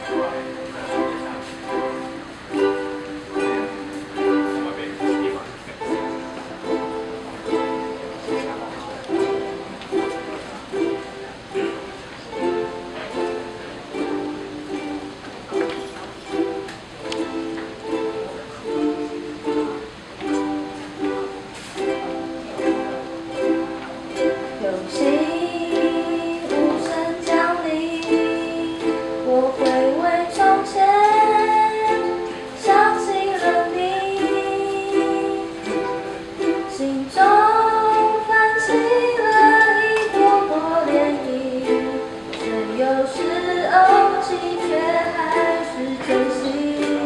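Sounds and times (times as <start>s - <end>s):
ukulele strummed chords: 0.0s - 47.0s
person singing: 24.2s - 47.0s.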